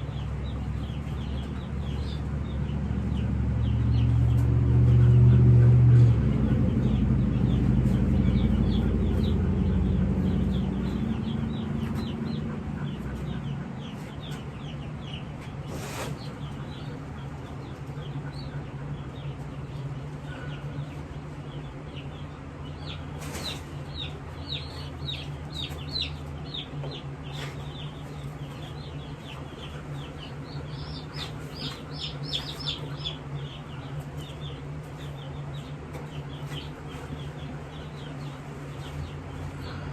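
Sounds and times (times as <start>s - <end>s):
low rumble: 0.0s - 15.6s
chicks peeping: 0.0s - 39.9s
steady low hum: 0.0s - 39.9s.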